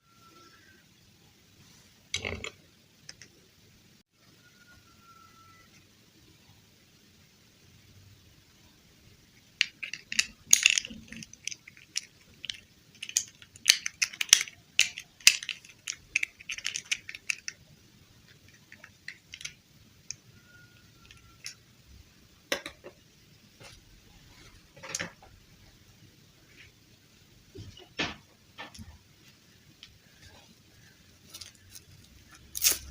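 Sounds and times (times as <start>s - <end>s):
plastic clicks: 9.6s - 17.6s, 18.3s - 20.2s
plastic packaging crinkling: 9.6s - 17.6s, 31.2s - 32.9s.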